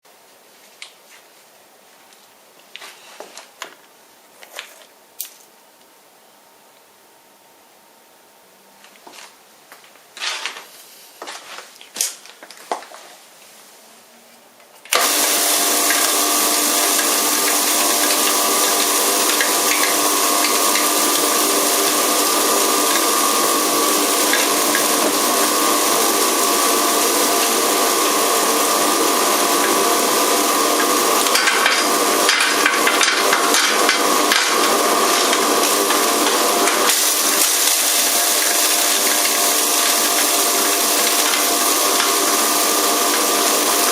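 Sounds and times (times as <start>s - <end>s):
electric grinder whining: 14.9s - 43.9s.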